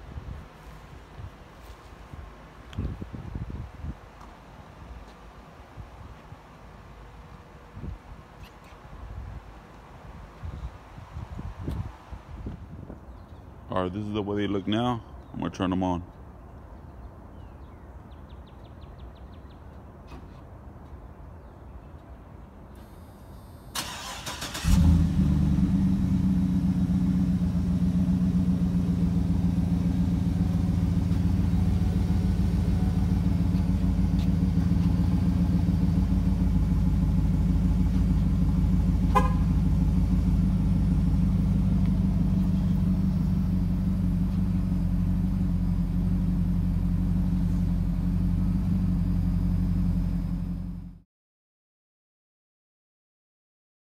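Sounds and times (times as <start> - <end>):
engine idling: 23.8 - 51.0.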